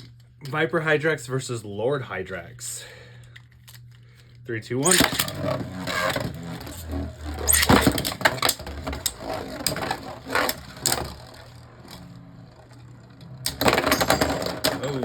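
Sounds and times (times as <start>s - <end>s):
spinning tops clacking together: 4.8s - 6.1s, 7.4s - 15.0s
spinning tops whirring: 4.8s - 15.0s.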